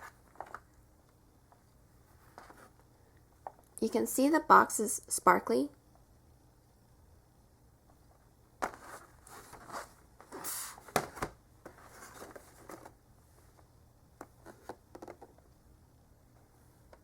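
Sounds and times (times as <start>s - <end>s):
packaging rustling and scraping: 8.6s - 13.0s.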